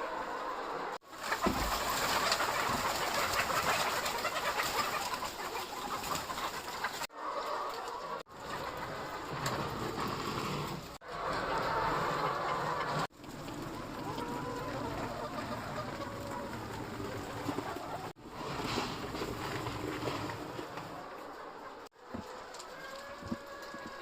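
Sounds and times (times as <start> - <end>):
chickens clucking and cooing: 0.0 - 24.0.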